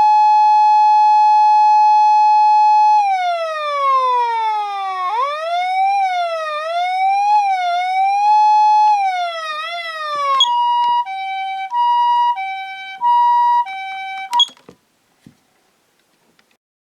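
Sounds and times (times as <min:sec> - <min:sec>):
two-tone ambulance siren: 0:00.0 - 0:14.4
wailing siren: 0:00.0 - 0:14.4
siren switch click: 0:10.2 - 0:11.9, 0:14.2 - 0:14.6.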